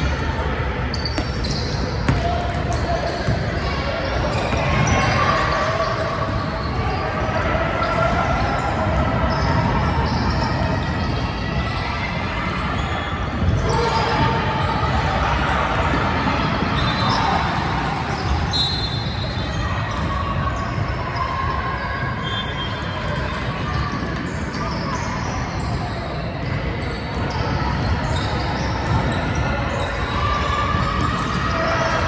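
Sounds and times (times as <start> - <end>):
crowd and player voices: 0.0 - 32.0
basketball bouncing on court: 0.9 - 5.5.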